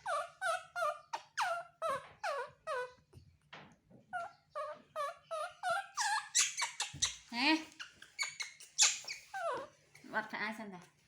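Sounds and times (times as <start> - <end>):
baby monkey high-pitched calls: 0.0 - 3.0, 4.1 - 9.7.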